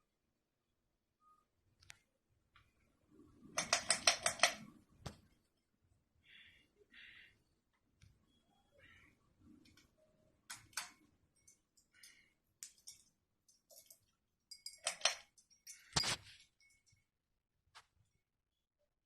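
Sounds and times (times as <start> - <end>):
light clinks and clicks: 10.5 - 17.1.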